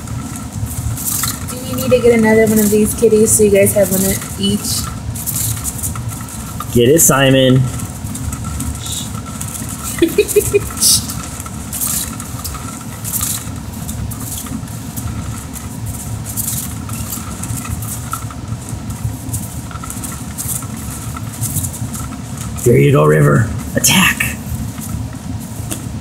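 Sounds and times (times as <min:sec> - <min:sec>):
small motor running: 0:00.0 - 0:23.3.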